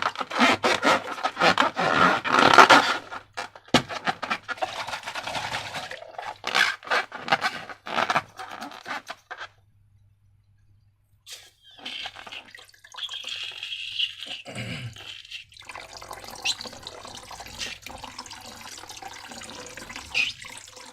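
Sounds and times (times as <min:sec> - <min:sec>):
slime squelching by hand: 0:19.8 - 0:20.5.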